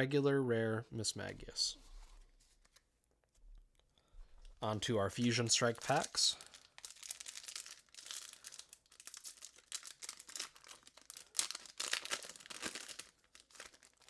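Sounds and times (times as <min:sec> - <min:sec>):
foil wrapper crinkling and tearing: 0:05.2 - 0:14.0.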